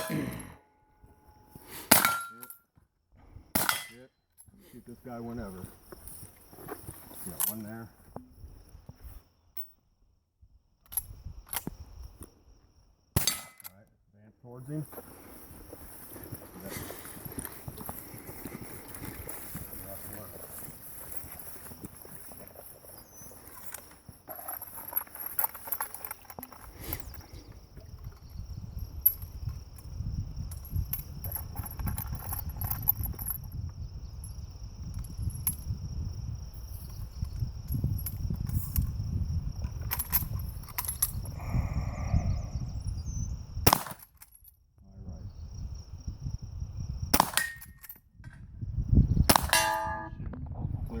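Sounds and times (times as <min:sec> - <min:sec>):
rifle shots: 0:03.6 - 0:04.0, 0:43.7 - 0:44.0, 0:47.2 - 0:47.6, 0:49.3 - 0:50.1
footsteps: 0:14.8 - 0:24.1
steel target ringing: 0:49.4 - 0:50.2.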